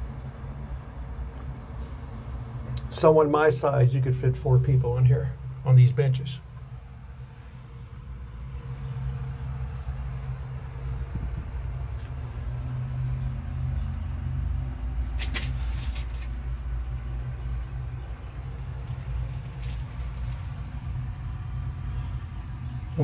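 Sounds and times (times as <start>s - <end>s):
steady low rumble: 0.0s - 23.0s
rustling scrape: 15.0s - 16.4s, 18.9s - 20.9s.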